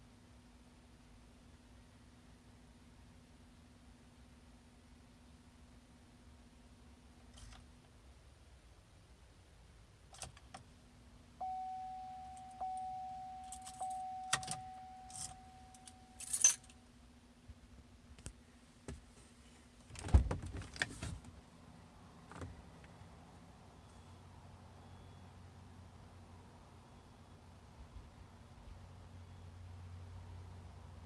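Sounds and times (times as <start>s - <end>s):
faint steady hum: 0.0s - 31.0s
dashboard warning chime: 11.4s - 16.7s
keys jingling and clicking: 13.4s - 16.7s.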